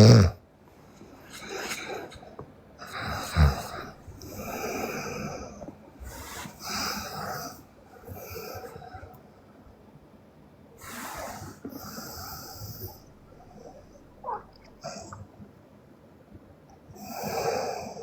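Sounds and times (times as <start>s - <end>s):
girl snoring: 0.0s - 0.4s, 2.9s - 5.4s, 11.9s - 14.9s.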